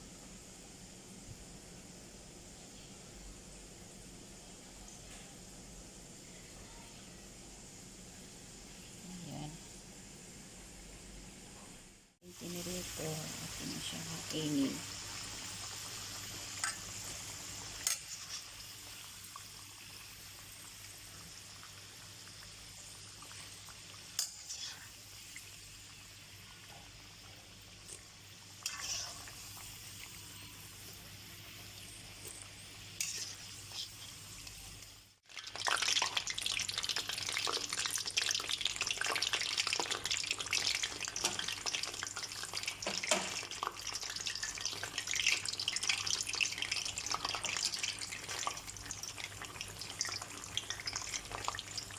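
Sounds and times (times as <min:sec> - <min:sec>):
food frying in hot oil: 0:12.2 - 0:51.9.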